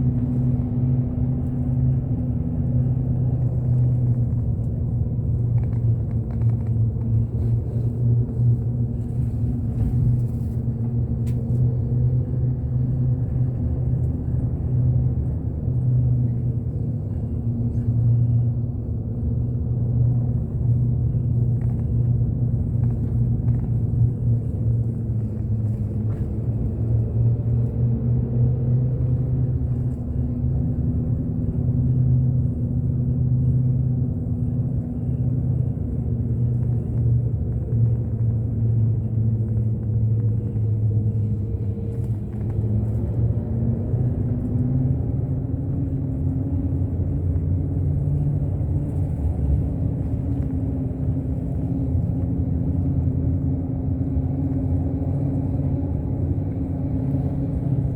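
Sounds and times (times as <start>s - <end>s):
bus engine droning: 0.0s - 57.9s
road rumble: 0.0s - 57.9s.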